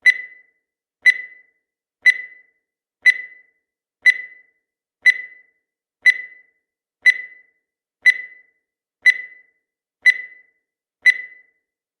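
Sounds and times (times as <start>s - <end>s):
timer tick click with high ring: 0.0s - 11.7s.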